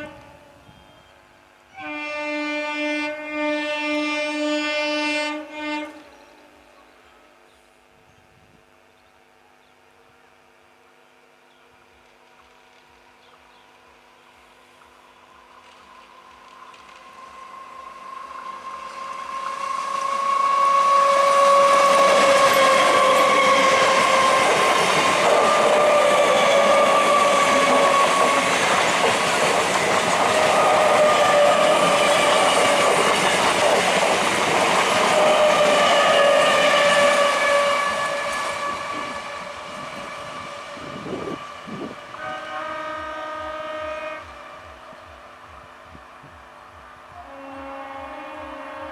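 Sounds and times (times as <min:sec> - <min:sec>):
train horn: 0:00.0 - 0:07.6, 0:14.4 - 0:48.9
train wheels clattering on rails: 0:14.8 - 0:42.2.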